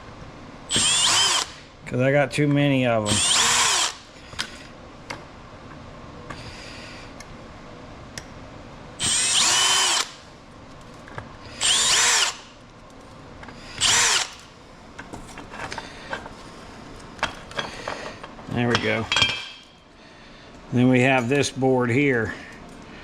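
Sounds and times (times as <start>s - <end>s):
power drill motor whining: 0.7s - 1.6s, 3.1s - 4.0s, 9.0s - 10.2s, 11.6s - 12.5s, 13.8s - 14.4s.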